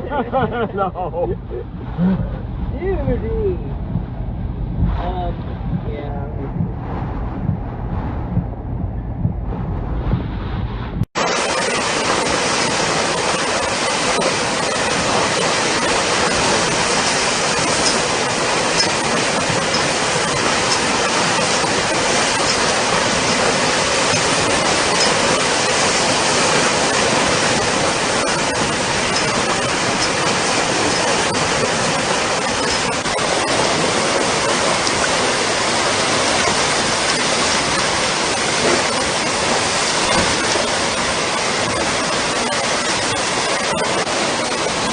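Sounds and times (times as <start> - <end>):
hurricane wind: 0.0 - 44.9
rushing water: 11.2 - 44.9.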